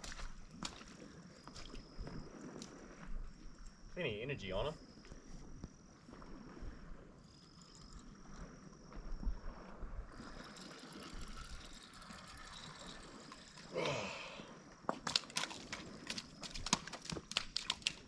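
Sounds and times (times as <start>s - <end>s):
wind rumble on microphone: 0.0s - 4.0s, 4.8s - 13.7s
sea wash: 0.0s - 18.0s
wind: 0.0s - 18.0s.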